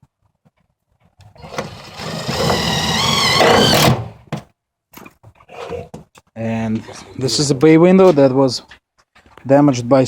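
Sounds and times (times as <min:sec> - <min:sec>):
power drill motor whining: 0:01.4 - 0:04.1.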